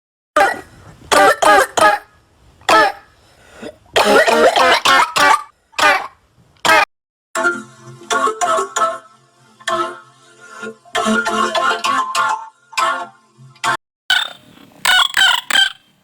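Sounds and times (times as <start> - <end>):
person coughing: 4.0 - 5.1.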